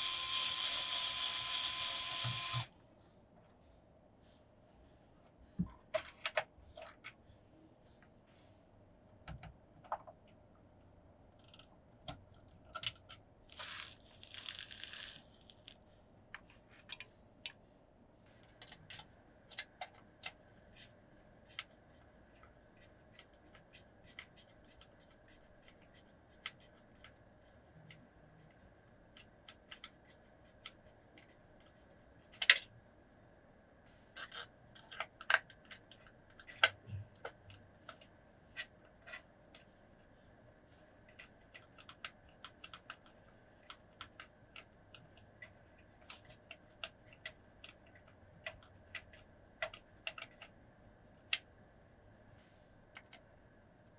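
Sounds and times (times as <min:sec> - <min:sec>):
packaging rustling: 0:13.5 - 0:15.8.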